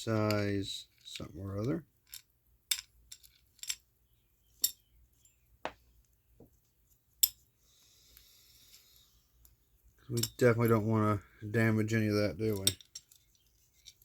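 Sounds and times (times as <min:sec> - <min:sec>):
small metal tools clicking: 0:02.0 - 0:03.8, 0:04.6 - 0:04.8, 0:09.4 - 0:10.4, 0:12.5 - 0:14.0.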